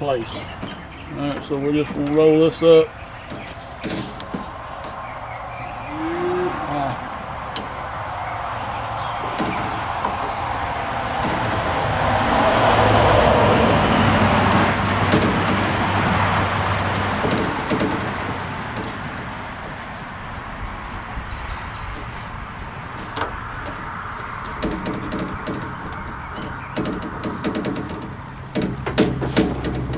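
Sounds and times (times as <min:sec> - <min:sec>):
light knocks: 0:00.0 - 0:06.0, 0:06.8 - 0:29.9
crickets chirping: 0:00.0 - 0:29.9
vehicle driving past: 0:04.4 - 0:26.8.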